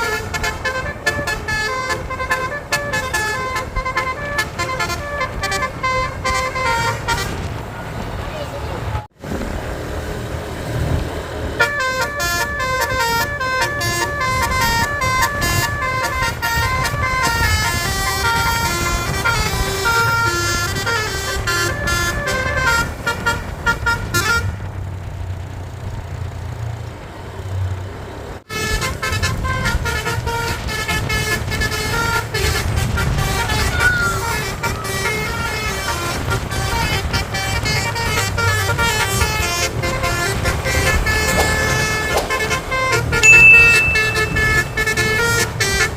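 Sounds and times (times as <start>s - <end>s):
multi-tone bus horn melody: 0.0s - 7.6s, 11.5s - 24.6s, 28.5s - 45.9s
bus engine rumble: 0.0s - 43.6s, 44.3s - 45.9s.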